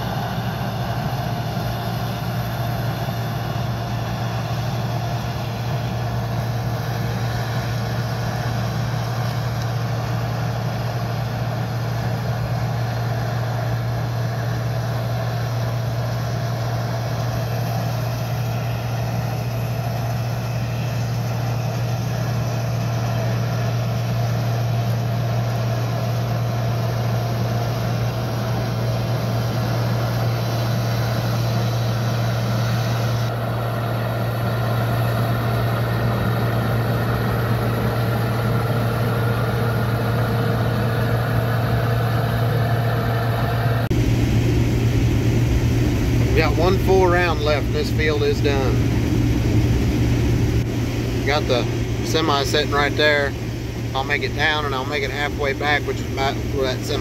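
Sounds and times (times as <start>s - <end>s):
diesel engine droning: 0.0s - 57.0s.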